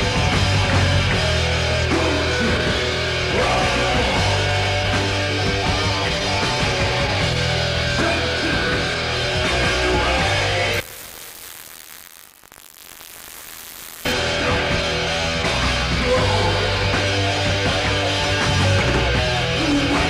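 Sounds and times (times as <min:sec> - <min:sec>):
distorted electric guitars riffing: 0:00.0 - 0:20.0
thrash metal band playing: 0:14.1 - 0:20.0.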